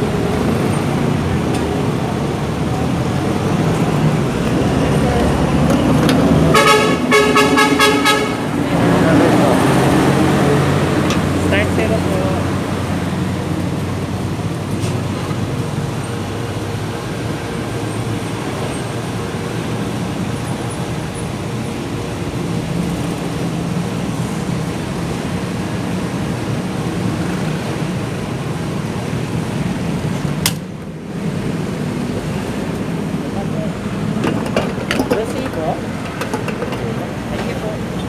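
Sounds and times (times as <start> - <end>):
city traffic noise: 0.0 - 38.0.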